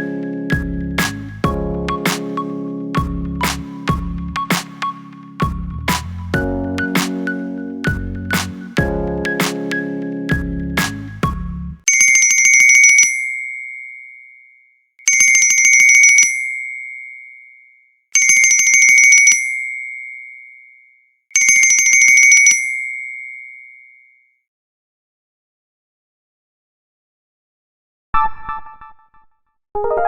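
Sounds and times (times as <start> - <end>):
phone bell ringtone trill: 11.9 - 13.8, 15.1 - 16.9, 18.2 - 20.0, 21.4 - 22.9.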